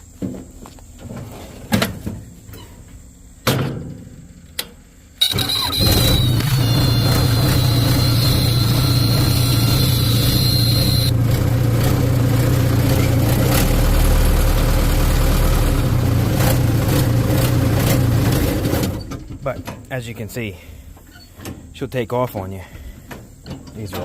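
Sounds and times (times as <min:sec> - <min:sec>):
high thin whine: 0:05.2 - 0:11.2
diesel engine running: 0:05.2 - 0:19.2.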